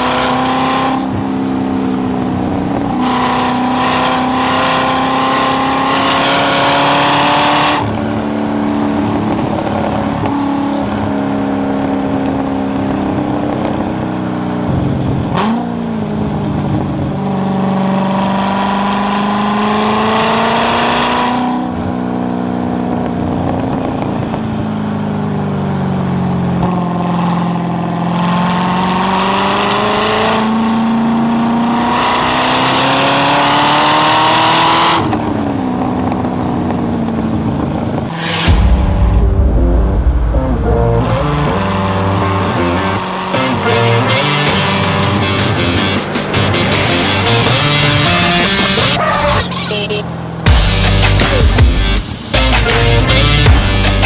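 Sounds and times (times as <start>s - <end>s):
car engine accelerating hard: 0.0s - 38.6s, 39.4s - 49.6s.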